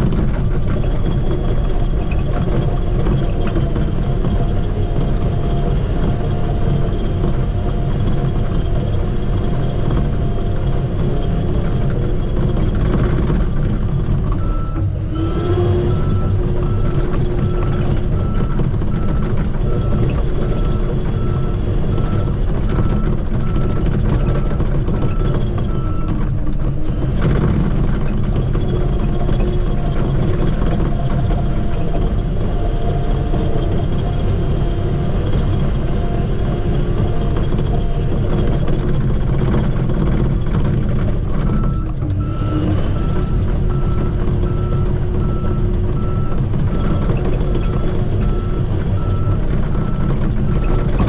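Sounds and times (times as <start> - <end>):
bulldozer diesel engine running: 0.0 - 51.0
reversing alarm beeping: 14.4 - 26.1.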